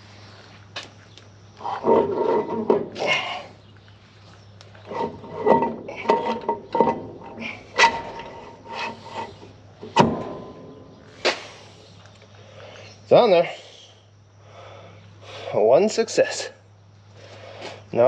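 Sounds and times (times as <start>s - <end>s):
metal knocks and scrapes: 1.7s - 3.0s, 4.8s - 11.0s.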